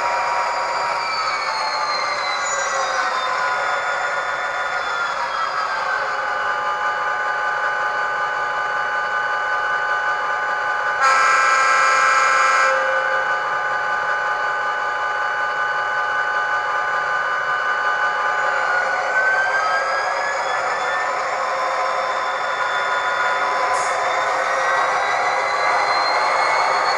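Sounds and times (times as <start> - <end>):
diesel locomotive engine sound: 0.0 - 26.9
locomotive horn blast: 11.0 - 12.9.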